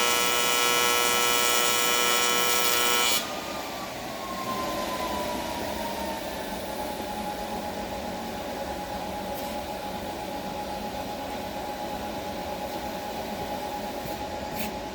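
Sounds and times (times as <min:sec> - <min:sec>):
welding arc buzzing hiss: 0:00.0 - 0:03.3.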